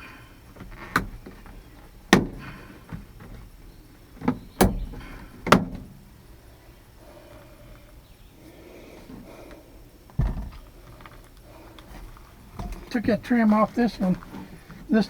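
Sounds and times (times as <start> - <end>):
sharp knocks and thuds: 0.6 - 3.5, 4.2 - 6.0.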